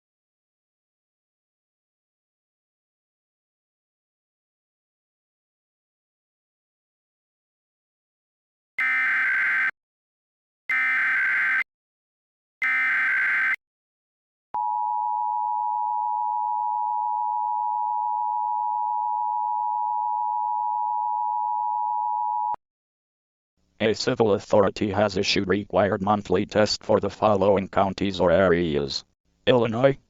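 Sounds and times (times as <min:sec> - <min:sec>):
digital data tone bursts: 0:12.6 - 0:13.6.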